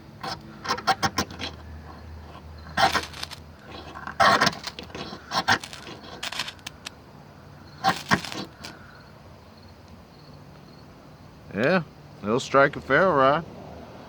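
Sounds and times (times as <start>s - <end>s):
blade scraping ferro rod: 0.0s - 6.9s, 7.8s - 8.8s.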